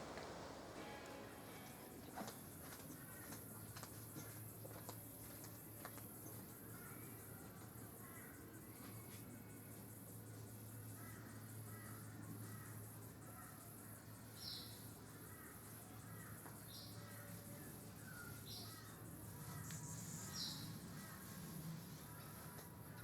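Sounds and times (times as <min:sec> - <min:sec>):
warbling birdsong: 0:10.6 - 0:23.0.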